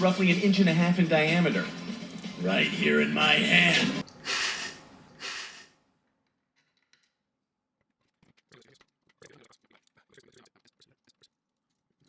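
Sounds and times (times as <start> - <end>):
short hissing noise bursts: 4.2 - 5.7.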